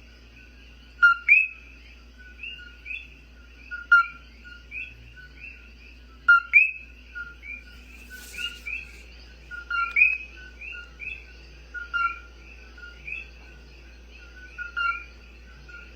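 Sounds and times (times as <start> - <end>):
frogs chorus calling: 0.4 - 15.9
brief hiss: 7.7 - 9.1.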